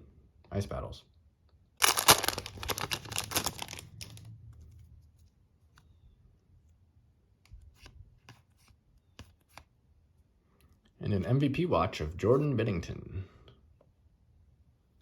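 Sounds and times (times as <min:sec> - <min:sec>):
cards rustling: 0:01.8 - 0:06.0.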